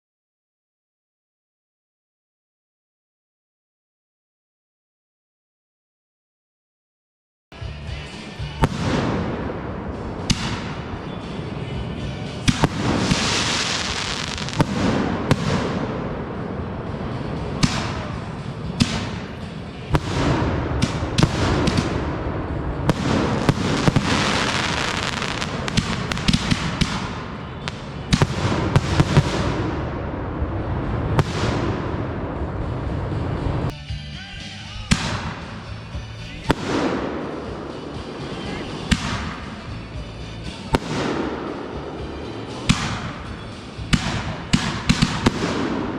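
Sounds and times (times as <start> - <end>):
fireworks crackling and banging: 8.6 - 33.7, 34.9 - 45.9.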